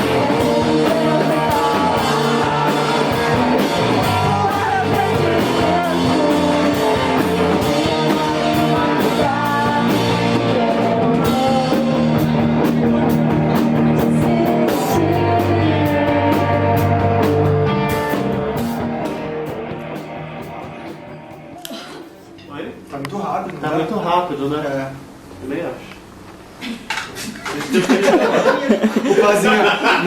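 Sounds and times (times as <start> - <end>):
person singing: 0.0 - 18.1
live rock band playing: 0.0 - 22.2
drum kit: 0.0 - 22.4
electric guitars: 0.0 - 22.9.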